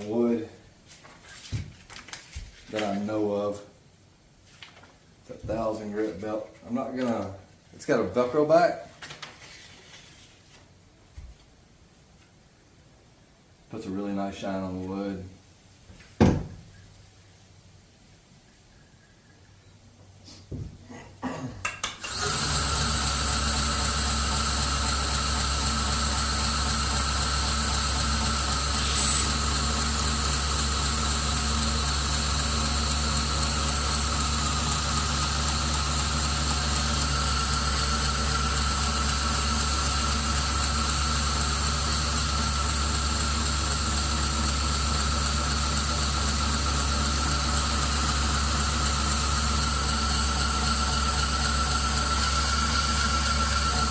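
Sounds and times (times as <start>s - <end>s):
belt grinder whirring: 22.0s - 53.9s.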